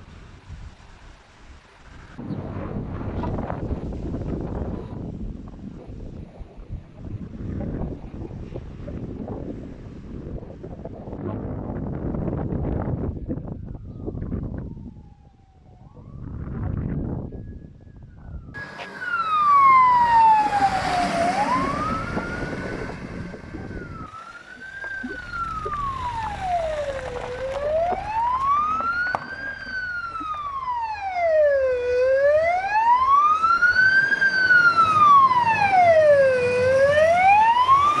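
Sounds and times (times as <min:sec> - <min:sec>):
low rumbling noise: 0:00.0 - 0:37.8
emergency siren wailing: 0:13.1 - 0:38.0.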